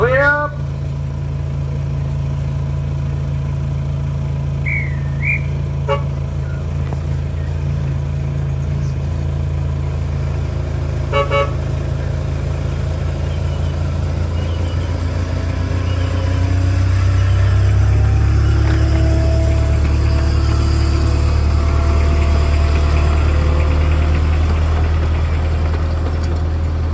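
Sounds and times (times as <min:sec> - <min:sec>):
locomotive engine humming: 0:00.0 - 0:26.9
locomotive horn toots: 0:04.6 - 0:06.7, 0:10.9 - 0:12.2.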